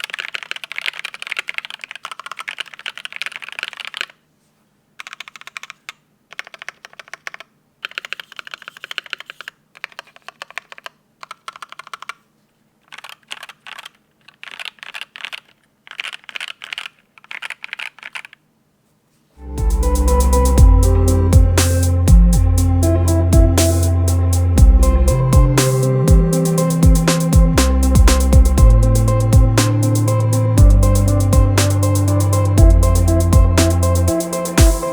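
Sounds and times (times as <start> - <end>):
mechanical keyboard typing: 0.0 - 4.2, 5.0 - 12.2, 12.8 - 18.4
music: 19.4 - 34.9.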